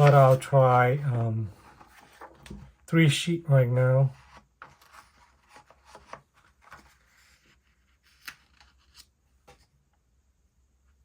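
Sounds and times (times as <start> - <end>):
paper rustling and scraping: 0.0 - 2.7, 4.1 - 9.7.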